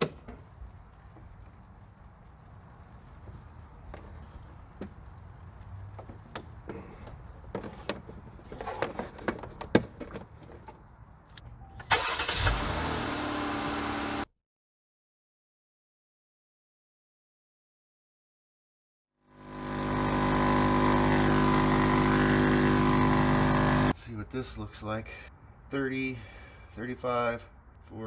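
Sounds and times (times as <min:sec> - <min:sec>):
air hose and fittings knocking: 0:00.0 - 0:11.5
air compressor running: 0:02.7 - 0:10.9, 0:12.0 - 0:14.2, 0:19.3 - 0:23.9.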